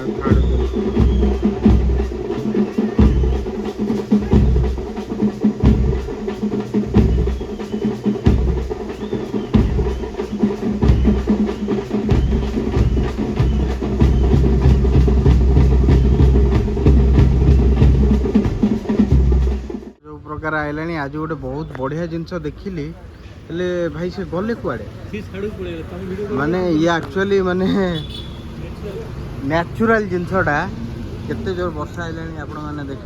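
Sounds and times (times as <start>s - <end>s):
deep bass beat: 0.0s - 7.6s, 9.5s - 19.7s
heavy drumming: 0.0s - 20.0s.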